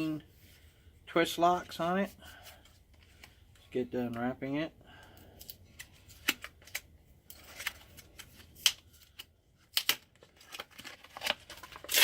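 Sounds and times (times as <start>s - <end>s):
packaging clicks and crinkly rustles: 5.3s - 12.0s.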